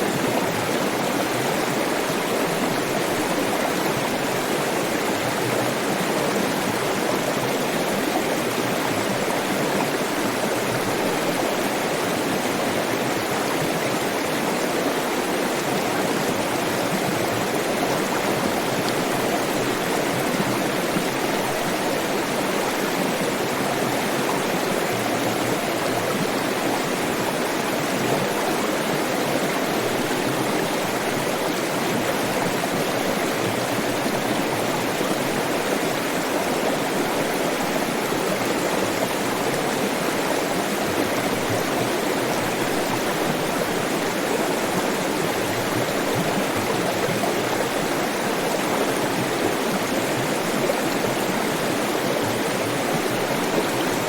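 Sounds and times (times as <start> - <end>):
stream water rushing and splashing: 0.0 - 54.0.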